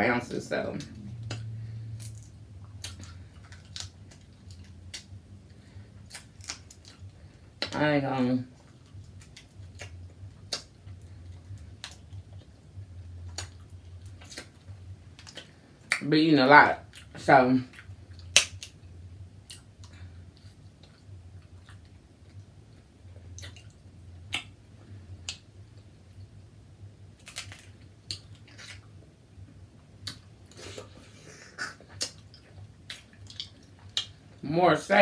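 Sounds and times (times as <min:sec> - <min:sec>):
faint low hum: 0:00.0 - 0:35.0
chewing and mouth sounds: 0:00.8 - 0:07.8, 0:08.5 - 0:16.0, 0:16.9 - 0:24.6, 0:27.2 - 0:34.4
sharp clicks and smacks: 0:18.2 - 0:18.8.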